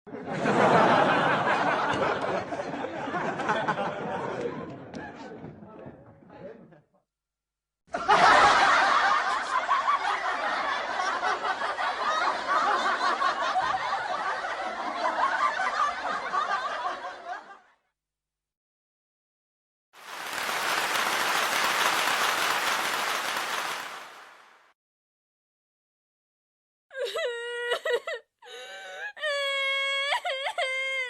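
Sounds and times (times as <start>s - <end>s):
crowd laughing: 0.1s - 5.9s, 7.9s - 17.8s, 20.0s - 24.5s.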